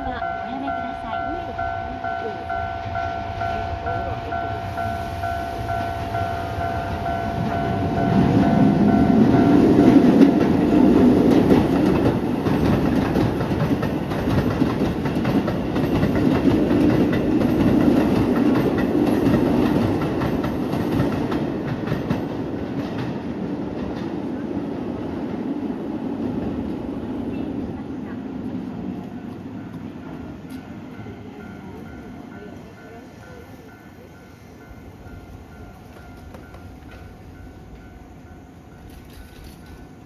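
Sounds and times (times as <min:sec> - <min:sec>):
electric train passing: 0:00.0 - 0:40.0
wheels clicking over rail joints: 0:07.4 - 0:23.2.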